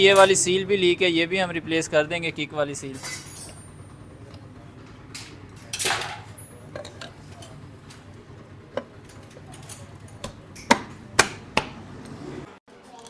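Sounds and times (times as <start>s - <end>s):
metal parts clinking: 2.8s - 4.3s, 5.1s - 8.1s, 9.0s - 10.8s
metal scraping clatter: 2.8s - 11.2s.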